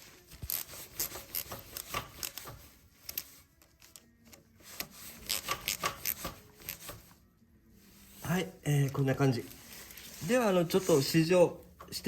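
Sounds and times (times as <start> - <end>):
hand tools clicking and scraping metal: 0.3 - 7.1.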